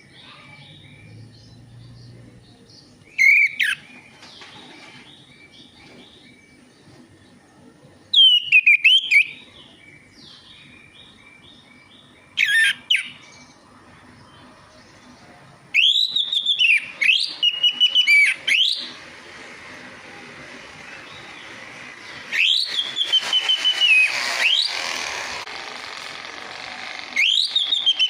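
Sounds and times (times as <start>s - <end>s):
thrush singing: 20.1s - 25.8s.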